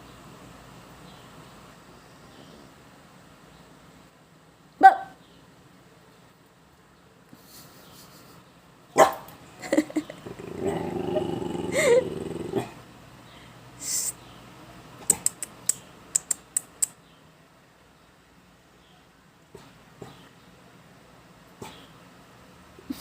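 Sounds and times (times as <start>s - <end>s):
dog snorting: 10.2s - 12.8s
breathy snuffle: 10.3s - 12.7s
dog snoring: 10.3s - 12.7s.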